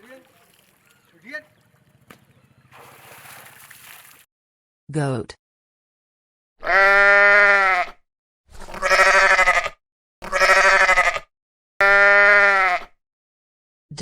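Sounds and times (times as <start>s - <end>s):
goat bleating: 6.6s - 8.0s, 8.6s - 13.0s.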